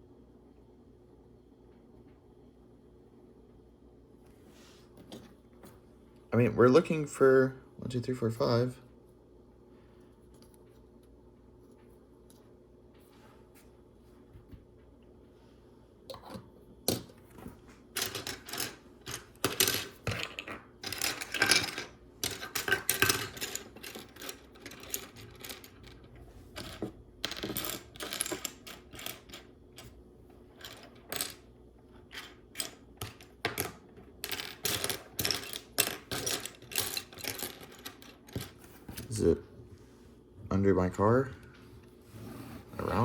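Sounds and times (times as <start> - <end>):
plastic pieces clattering: 18.0 - 26.0, 32.1 - 38.6.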